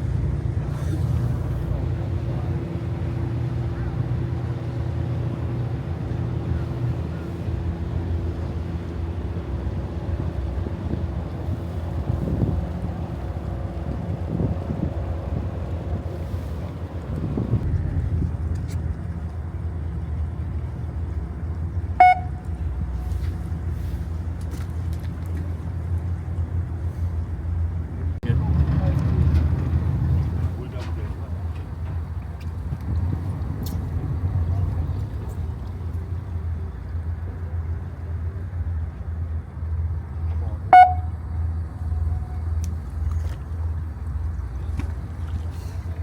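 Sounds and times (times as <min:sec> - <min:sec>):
boat engine humming: 0:00.0 - 0:46.0
short high beep: 0:22.0 - 0:22.4, 0:40.8 - 0:41.2.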